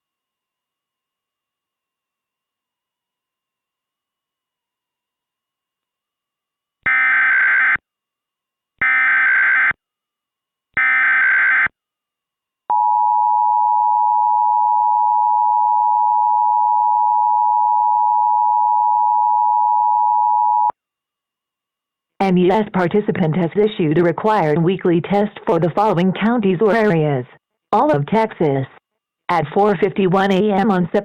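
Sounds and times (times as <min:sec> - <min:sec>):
steady attention tone: 0:22.2 - 0:31.0.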